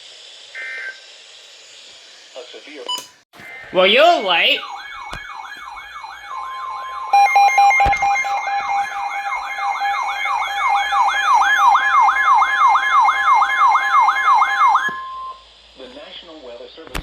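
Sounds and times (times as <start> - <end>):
warbling alert siren: 3.4 - 15.4
steady alert tones: 3.7 - 12.9.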